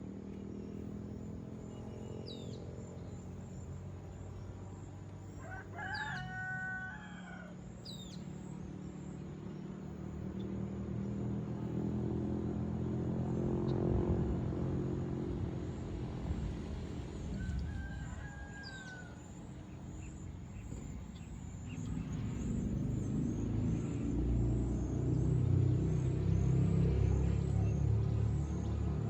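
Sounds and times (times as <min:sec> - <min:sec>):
rooster crowing: 0:05.4 - 0:07.7, 0:17.3 - 0:19.4.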